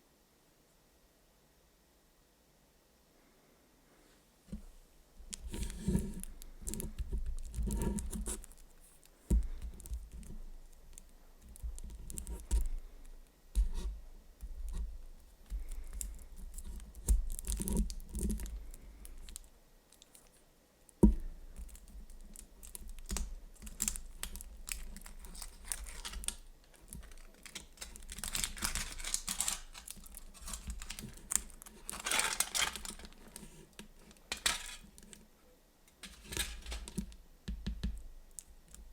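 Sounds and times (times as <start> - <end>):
foil wrapper crinkling: 21.6 - 35.2, 36.0 - 37.2.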